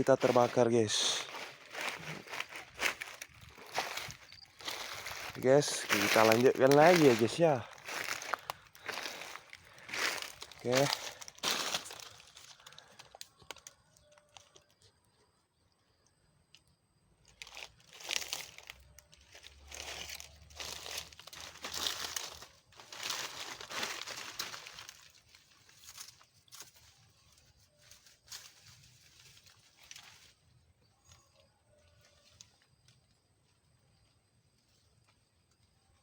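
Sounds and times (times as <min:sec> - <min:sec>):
dry leaves rustling and crunching: 0:00.0 - 0:13.8, 0:17.3 - 0:30.5.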